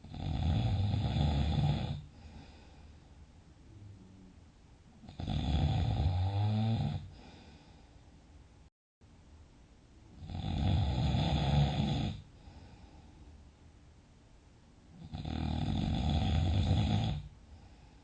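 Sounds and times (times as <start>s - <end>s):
loud snoring: 0.0s - 2.1s, 5.0s - 7.3s, 10.2s - 12.3s, 15.0s - 17.3s
faint breathing: 2.0s - 4.4s, 7.0s - 8.2s, 12.2s - 13.6s, 17.4s - 18.0s.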